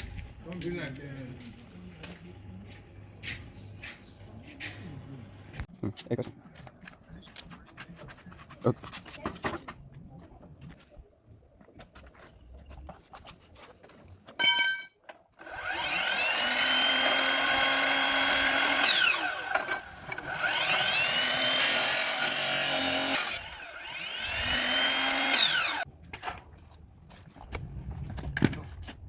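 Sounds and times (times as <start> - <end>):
electric motor whining: 15.4 - 25.8.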